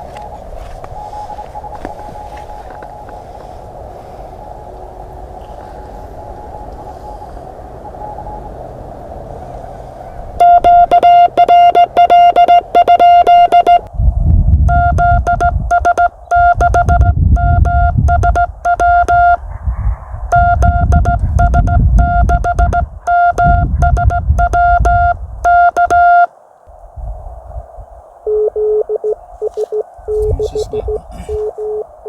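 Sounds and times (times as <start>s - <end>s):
morse code tone: 10.4s - 13.9s, 14.7s - 19.4s, 20.3s - 26.3s, 28.3s - 31.9s
keying clicks: 10.6s - 13.9s, 14.7s - 19.4s, 20.3s - 26.3s
low rumble: 13.6s - 32.0s.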